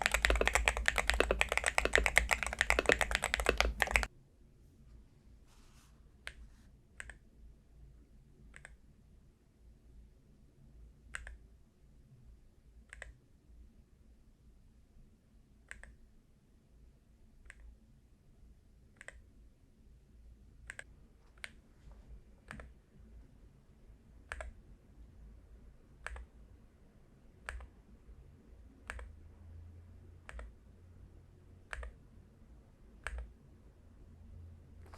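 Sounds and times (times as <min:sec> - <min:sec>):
faint keyboard key clicks: 0:00.0 - 0:04.1.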